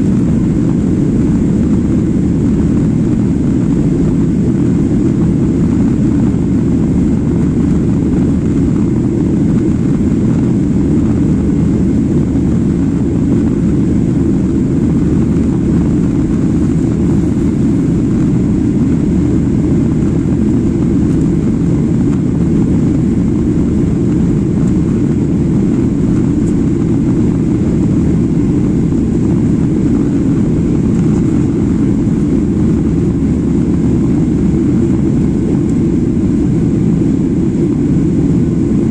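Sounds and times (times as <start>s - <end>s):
jet engine roar in cabin: 0.0s - 38.9s.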